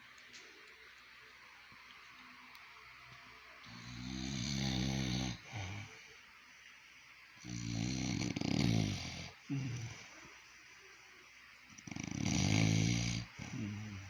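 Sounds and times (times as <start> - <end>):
man snoring: 3.7 - 6.0, 7.4 - 10.1, 11.8 - 14.0.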